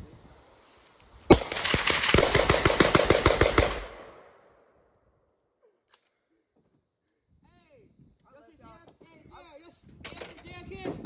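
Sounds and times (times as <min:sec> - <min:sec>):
rapid gunshots: 0:01.3 - 0:04.4.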